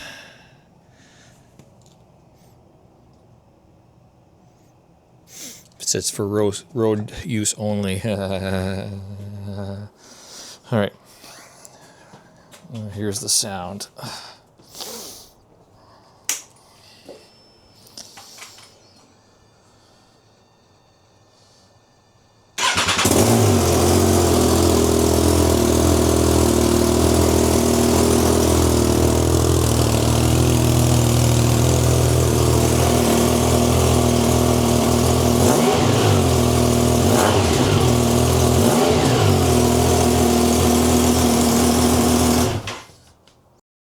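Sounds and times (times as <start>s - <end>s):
motorcycle engine running: 22.6s - 42.9s.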